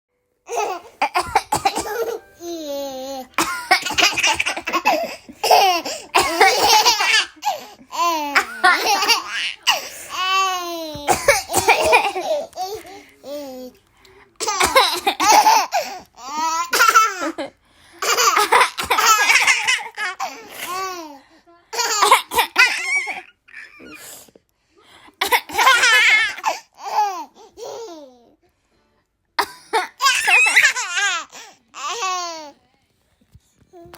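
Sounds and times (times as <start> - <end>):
baby laughing: 0.5 - 13.7, 18.0 - 21.1, 25.3 - 28.2.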